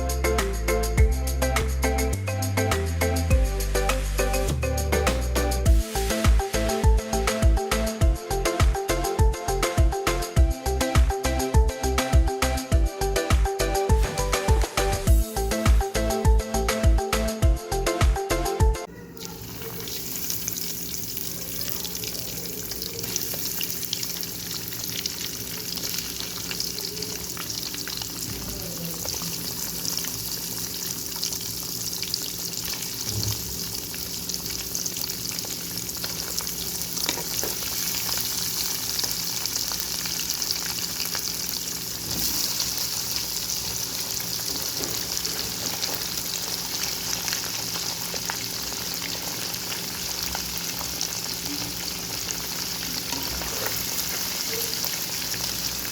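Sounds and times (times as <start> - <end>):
food sizzling in hot oil: 19.2 - 55.9.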